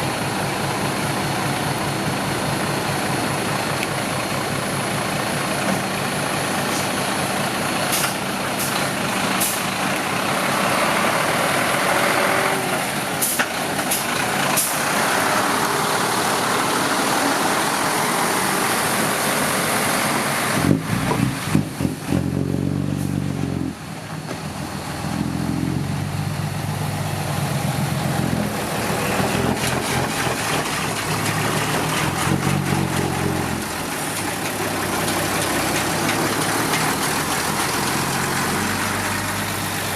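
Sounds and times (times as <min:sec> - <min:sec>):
heavy truck engines droning: 0:00.0 - 0:39.9.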